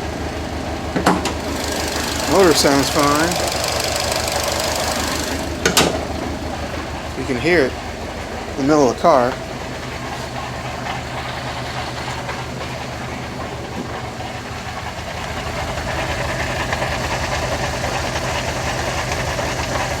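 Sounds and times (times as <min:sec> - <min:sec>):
car engine running: 0:00.0 - 0:20.0
fast even pulsing noise: 0:01.4 - 0:07.8.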